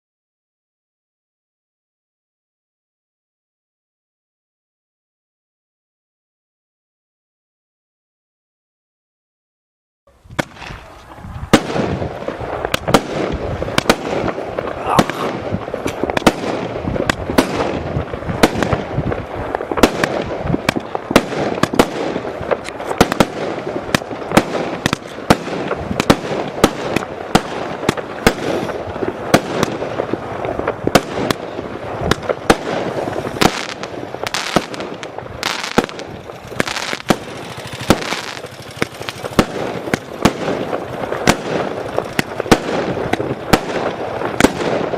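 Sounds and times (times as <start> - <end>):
steady rushing noise: 10.1 - 29.3, 30.0 - 44.9
firework bangs: 10.1 - 44.9.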